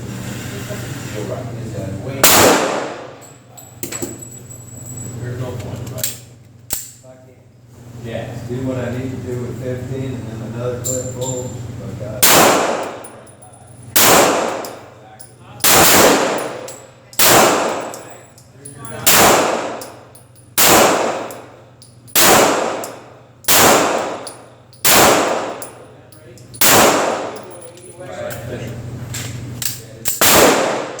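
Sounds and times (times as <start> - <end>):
pistol shots ringing: 2.2 - 3.3, 12.2 - 13.3, 13.9 - 14.9, 15.6 - 18.2, 19.0 - 25.8, 26.6 - 27.6, 30.1 - 31.0.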